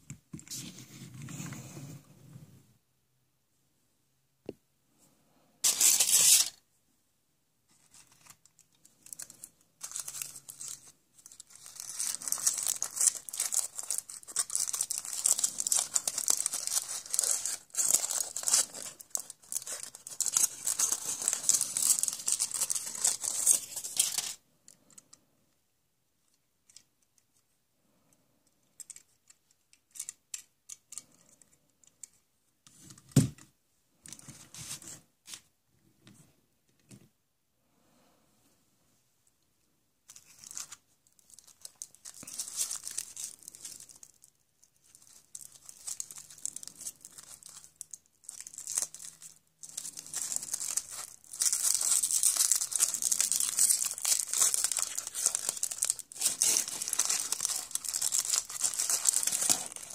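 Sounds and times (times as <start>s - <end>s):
wrapper crinkling and tearing: 5.6s - 6.6s, 7.8s - 24.9s, 40.1s - 59.9s.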